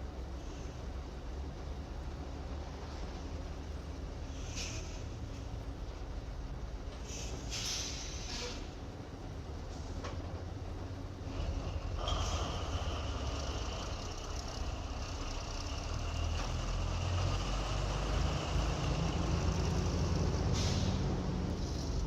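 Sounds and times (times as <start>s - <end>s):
hiss: 4.3s - 5.4s, 7.0s - 8.8s, 19.4s - 22.0s
heavy motor rumbling: 8.8s - 22.0s.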